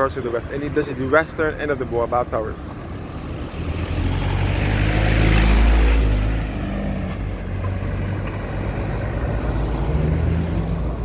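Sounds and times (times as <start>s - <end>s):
road traffic: 0.0s - 11.0s
vehicle passing close by: 2.9s - 11.0s.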